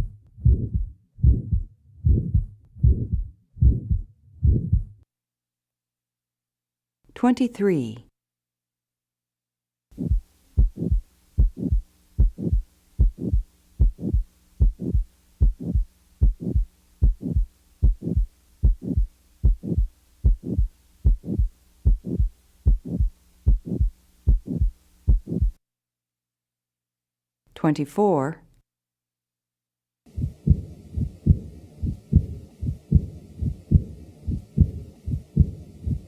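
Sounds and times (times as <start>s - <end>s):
heartbeat: 0.0s - 5.0s, 10.0s - 25.6s, 30.1s - 36.0s
faint steady hum: 9.9s - 25.6s, 30.1s - 36.0s.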